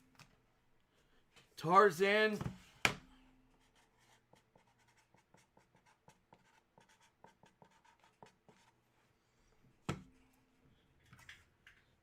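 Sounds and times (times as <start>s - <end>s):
pen scratching on paper: 3.6s - 8.8s.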